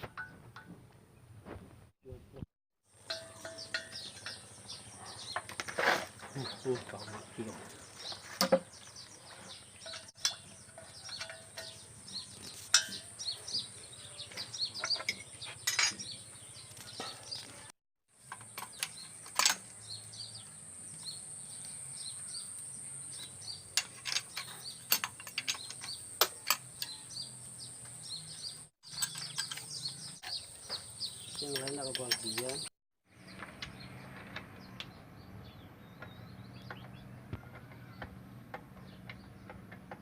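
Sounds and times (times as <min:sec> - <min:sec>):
hand tools clinking on metal: 0:03.0 - 0:08.6, 0:09.5 - 0:16.2, 0:18.2 - 0:19.8, 0:23.6 - 0:27.2, 0:28.9 - 0:30.4, 0:31.2 - 0:32.7
birds chirping: 0:03.0 - 0:40.0.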